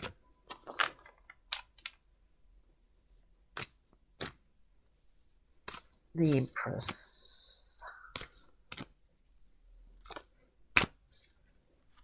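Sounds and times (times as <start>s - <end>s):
cards snapping and tapping: 3.6s - 4.4s, 8.1s - 9.0s, 10.0s - 11.3s.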